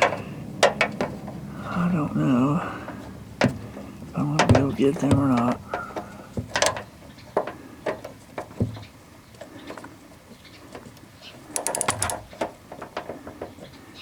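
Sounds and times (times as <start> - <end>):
metal clicks and knocks: 0.0 - 1.4, 2.9 - 8.9, 11.5 - 13.6
ratchet wrench clicking: 11.5 - 12.3.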